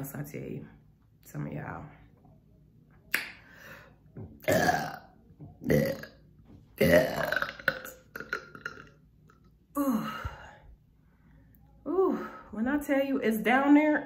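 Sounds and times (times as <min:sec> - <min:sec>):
woman burping: 0:04.4 - 0:06.2, 0:06.8 - 0:09.0.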